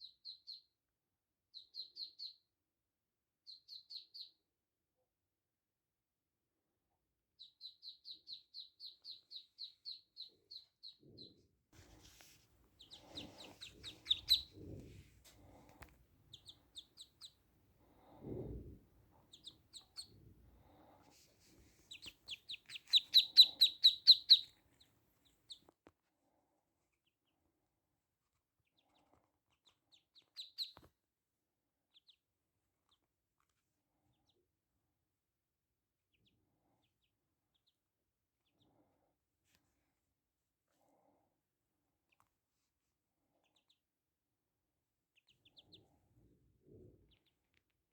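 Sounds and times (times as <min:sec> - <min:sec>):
ducklings peeping: 0:00.0 - 0:00.7, 0:01.5 - 0:02.4, 0:03.5 - 0:04.4, 0:07.4 - 0:18.3, 0:19.2 - 0:21.0, 0:21.6 - 0:24.6, 0:28.7 - 0:30.8, 0:45.2 - 0:46.0, 0:47.1 - 0:47.4.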